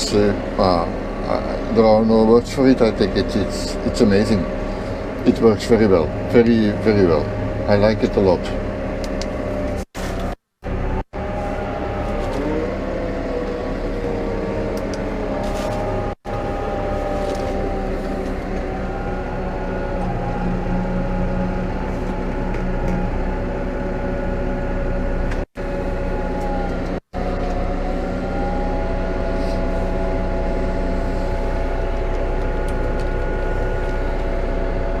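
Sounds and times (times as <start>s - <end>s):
tractor engine under load: 0.0s - 35.0s.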